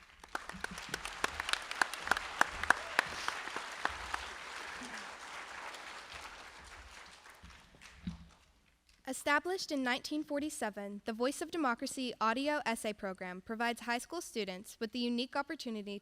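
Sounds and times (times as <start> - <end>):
audience applauding: 0.0 - 8.4.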